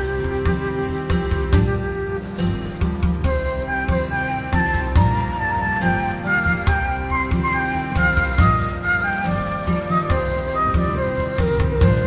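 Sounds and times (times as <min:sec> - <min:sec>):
flute-like melody with bass and percussion: 0:00.0 - 0:12.0.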